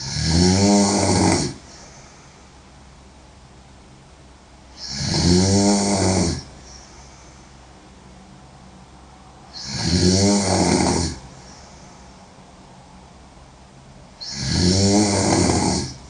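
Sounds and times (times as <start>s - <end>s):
woman snoring loudly: 0.0s - 1.7s, 4.8s - 6.5s, 9.5s - 11.3s, 14.2s - 16.0s.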